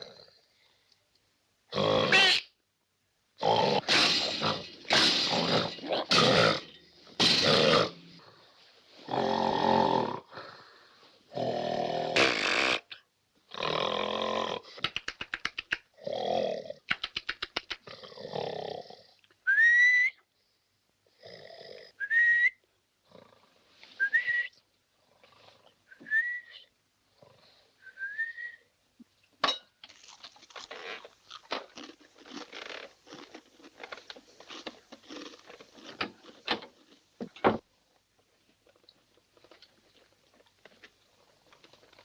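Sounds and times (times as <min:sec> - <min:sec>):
crackling and rustling: 0:03.8 - 0:09.0, 0:29.8 - 0:42.0
whistle on out-breath: 0:19.5 - 0:20.2, 0:22.0 - 0:22.6, 0:24.0 - 0:24.6, 0:25.9 - 0:26.7, 0:27.8 - 0:28.6.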